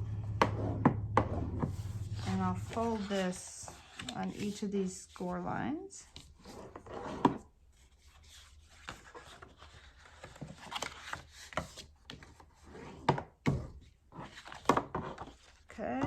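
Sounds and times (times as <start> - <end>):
cardstock folding and crackling: 0.4 - 5.2, 7.8 - 12.5, 14.1 - 16.0.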